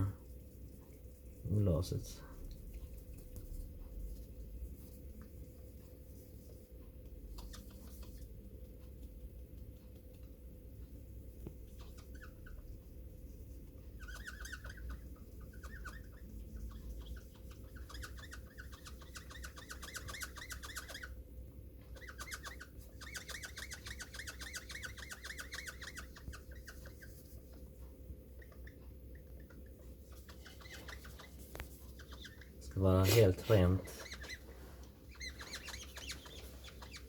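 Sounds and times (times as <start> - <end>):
paper squeaking on glass: 11.7 - 12.8, 13.8 - 21.1, 30.1 - 37.0.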